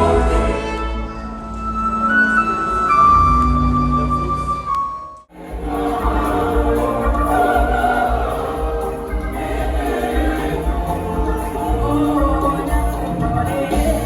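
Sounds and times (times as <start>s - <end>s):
choir singing: 0.0s - 1.4s, 5.3s - 14.0s
instrumental backing with pulsing bass: 1.9s - 14.0s.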